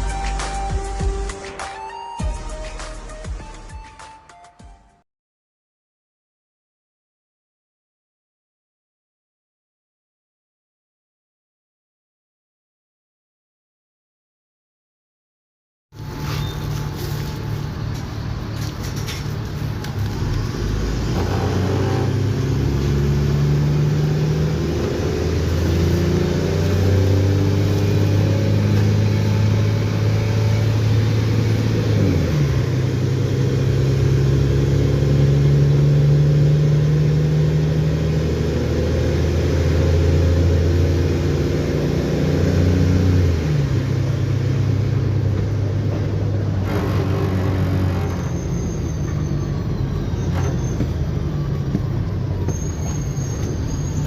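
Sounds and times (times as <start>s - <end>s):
bus engine accelerating: 16.0s - 54.0s.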